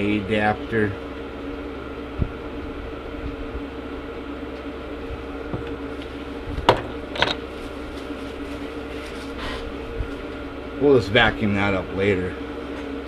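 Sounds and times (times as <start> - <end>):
background hum: 0.0 - 13.0.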